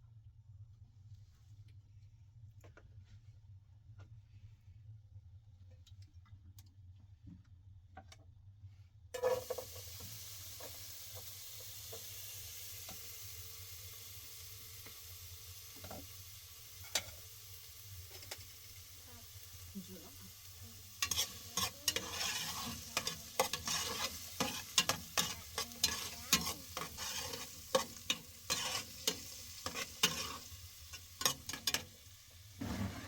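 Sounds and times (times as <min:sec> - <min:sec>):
food sizzling in a pan: 0:09.2 - 0:33.0.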